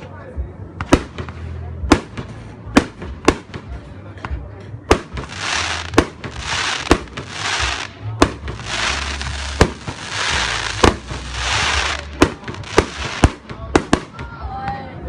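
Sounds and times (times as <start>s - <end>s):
firework shells bursting: 4.9s - 14.1s
firework crackling hiss: 5.0s - 14.0s.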